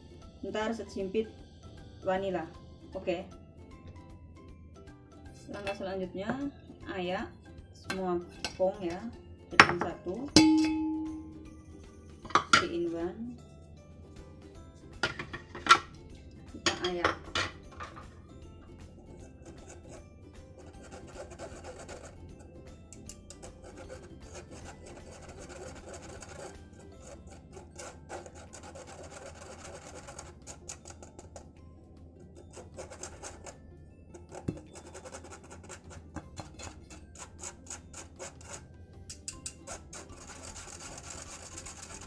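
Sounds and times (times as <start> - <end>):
background music: 0.0 - 42.0
flour sieve scraping: 19.0 - 22.3, 23.2 - 31.4, 32.4 - 38.7, 39.3 - 42.0.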